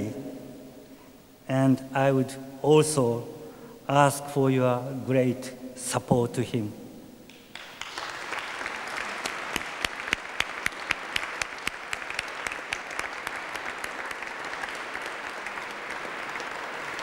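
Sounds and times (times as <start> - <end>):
audience applauding: 7.3 - 17.0
close rhythmic claps: 7.3 - 17.0.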